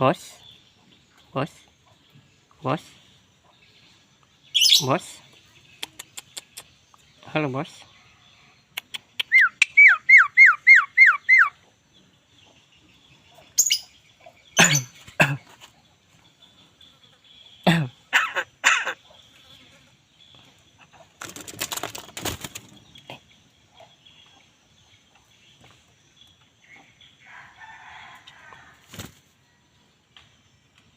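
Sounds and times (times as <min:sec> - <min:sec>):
myna harsh calls: 0:18.1 - 0:19.1.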